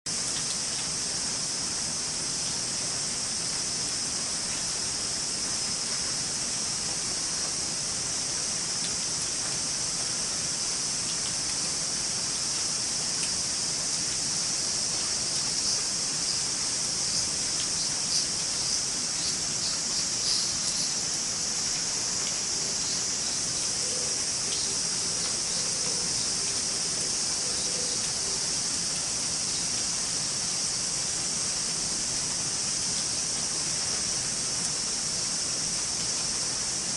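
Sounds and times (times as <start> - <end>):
high-pitched hiss: 0.1 - 36.9
light rain hissing: 0.1 - 36.9
raindrop ticks: 0.3 - 1.0, 11.1 - 11.8, 12.5 - 13.4, 21.7 - 22.4.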